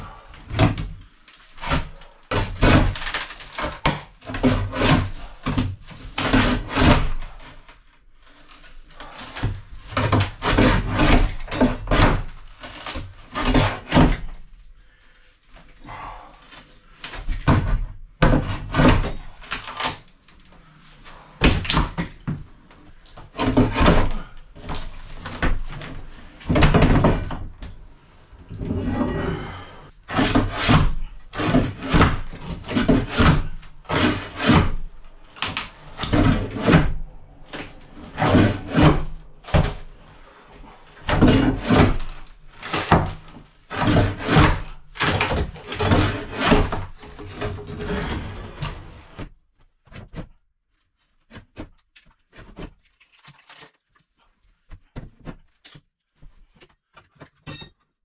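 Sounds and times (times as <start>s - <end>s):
knocks and thuds from building work: 0.0s - 7.6s, 9.0s - 14.4s, 17.1s - 20.0s, 21.4s - 22.6s, 23.2s - 27.8s, 28.5s - 40.0s, 41.0s - 50.4s, 54.7s - 55.6s.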